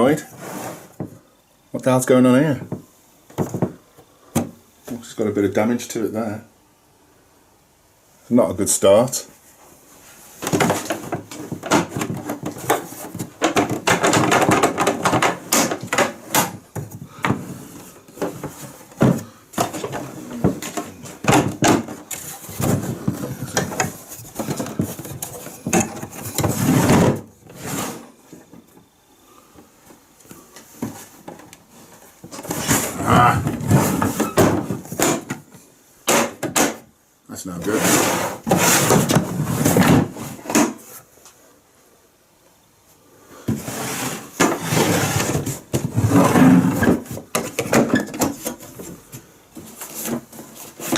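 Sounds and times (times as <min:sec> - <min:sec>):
packaging rustling and scraping: 0:00.2 - 0:01.0, 0:10.0 - 0:28.6, 0:30.6 - 0:35.3, 0:37.6 - 0:41.1, 0:43.5 - 0:50.9.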